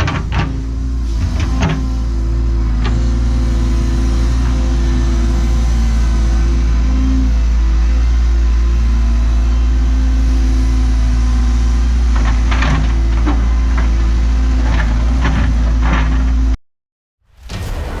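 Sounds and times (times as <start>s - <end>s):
knocks and clanks: 0.0s - 2.0s
excavator diesel engine running: 0.0s - 16.6s.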